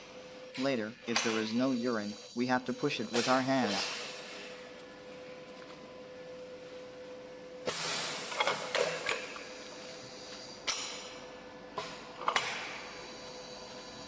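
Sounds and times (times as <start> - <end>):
machine humming: 0.0 - 7.6.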